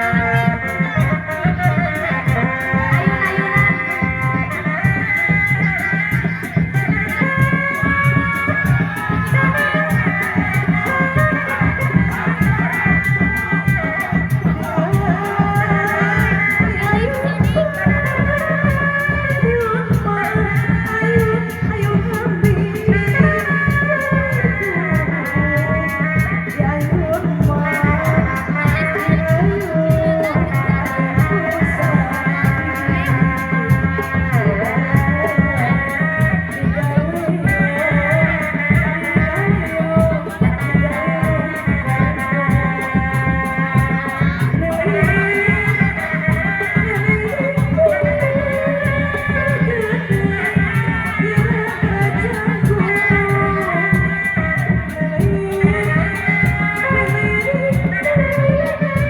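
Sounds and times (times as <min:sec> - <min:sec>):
wavering held melody: 0:00.0 - 0:19.1
fast ticking beat: 0:00.0 - 0:59.0
steady drumming: 0:00.0 - 0:59.0.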